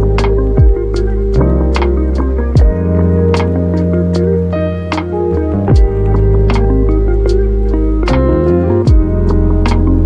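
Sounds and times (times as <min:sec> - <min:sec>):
instrumental background music: 0:00.0 - 0:10.0
falling bass swoop: 0:05.0 - 0:10.0.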